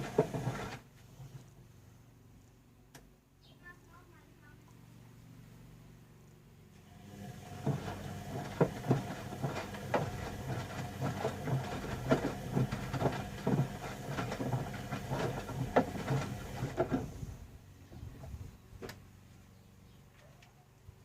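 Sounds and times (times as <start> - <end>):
laundry tumbling against drum: 0.0 - 0.8, 7.3 - 17.2
washing machine motor humming: 0.0 - 0.8, 6.8 - 18.2.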